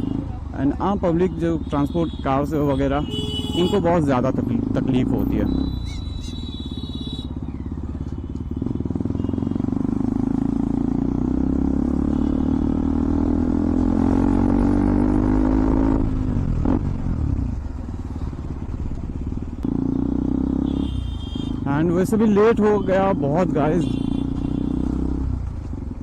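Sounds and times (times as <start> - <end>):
motorcycle engine accelerating: 4.4 - 21.2.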